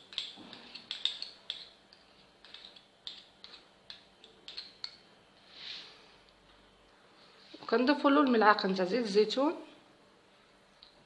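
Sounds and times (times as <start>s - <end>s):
spoon clinking against dish: 0.0s - 5.0s.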